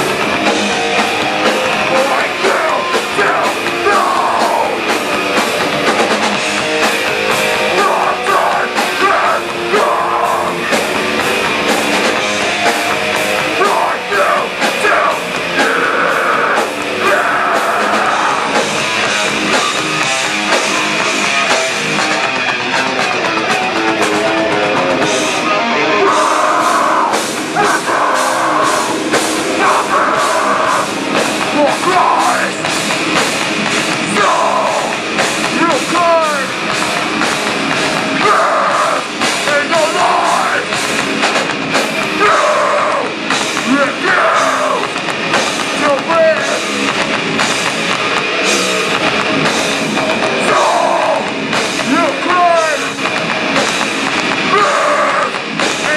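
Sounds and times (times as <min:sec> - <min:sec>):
distorted electric guitars: 0:00.0 - 0:55.9
fast drum beat: 0:00.0 - 0:55.9
person singing: 0:01.8 - 0:04.9, 0:07.7 - 0:10.6, 0:25.4 - 0:32.7, 0:50.4 - 0:52.7.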